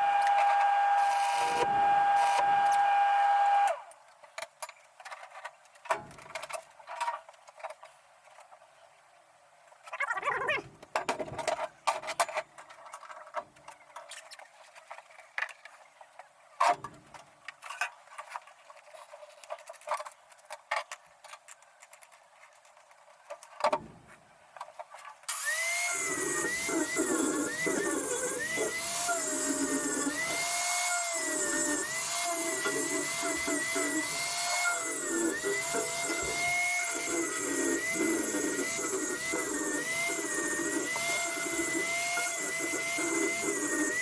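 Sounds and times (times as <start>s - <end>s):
small power tool motor running: 0.0s - 3.8s, 25.3s - 44.0s.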